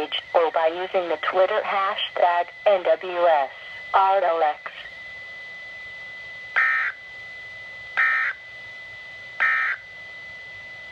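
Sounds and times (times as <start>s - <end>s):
digital data tone bursts: 6.6s - 7.0s, 8.0s - 8.4s, 9.4s - 9.8s.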